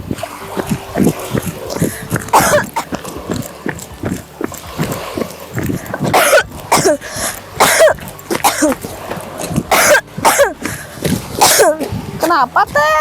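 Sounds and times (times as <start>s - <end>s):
person coughing harshly: 2.3s - 2.9s, 6.1s - 8.8s, 9.7s - 10.7s, 11.4s - 11.9s.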